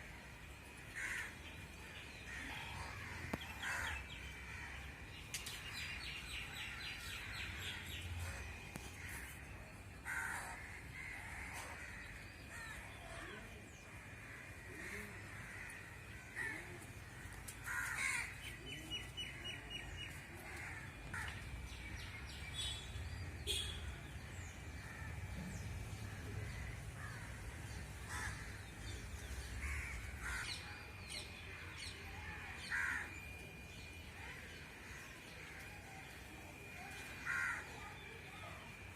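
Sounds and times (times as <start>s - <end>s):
crows cawing: 0.8s - 5.0s, 10.0s - 13.2s, 14.0s - 22.0s, 24.8s - 33.3s, 37.0s - 37.9s.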